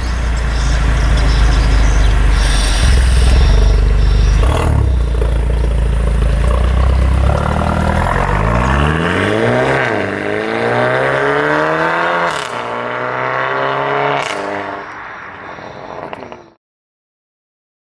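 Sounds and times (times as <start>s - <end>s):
car engine accelerating: 0.0s - 16.4s
exhaust fart on upshift: 2.4s - 12.0s.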